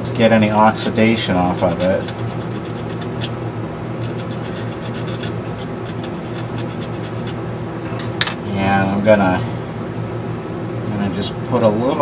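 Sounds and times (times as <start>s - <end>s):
file scraping wire: 0.6s - 3.4s, 4.0s - 7.4s.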